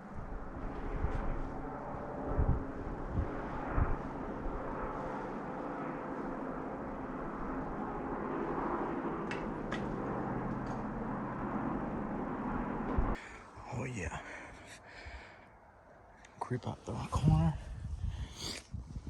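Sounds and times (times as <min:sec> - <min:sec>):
distant engine drone: 0:00.0 - 0:16.4.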